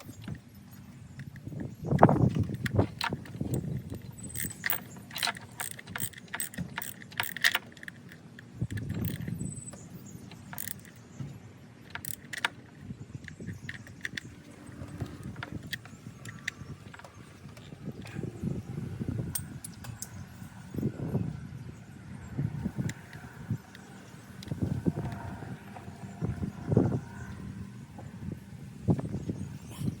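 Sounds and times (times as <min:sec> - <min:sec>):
metal parts and tools clinking: 0:00.0 - 0:18.4, 0:19.2 - 0:20.8.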